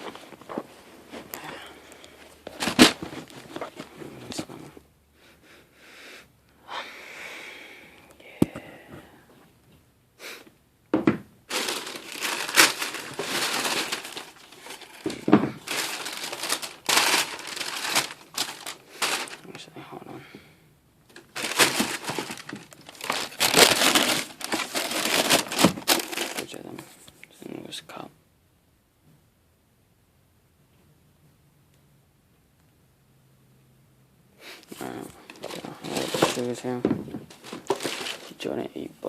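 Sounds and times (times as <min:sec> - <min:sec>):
packaging wrap crinkling: 0:11.5 - 0:19.6, 0:21.1 - 0:26.6, 0:35.2 - 0:38.4.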